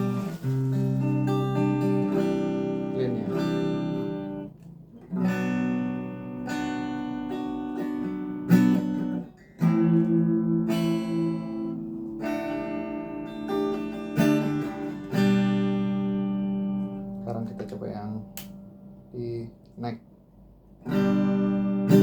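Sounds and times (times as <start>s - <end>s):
electric guitar strummed chords: 0.0s - 19.2s, 20.8s - 22.0s.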